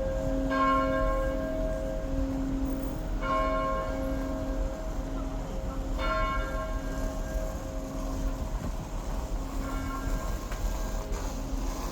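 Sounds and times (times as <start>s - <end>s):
church bell strike: 0.0s - 7.9s.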